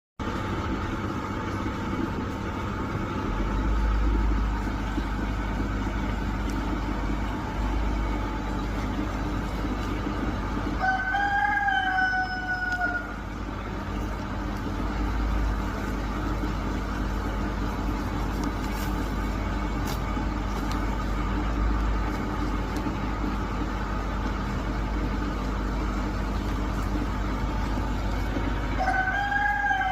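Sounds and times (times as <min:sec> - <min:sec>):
rooster crowing: 0:10.6 - 0:13.4, 0:28.7 - 0:29.9.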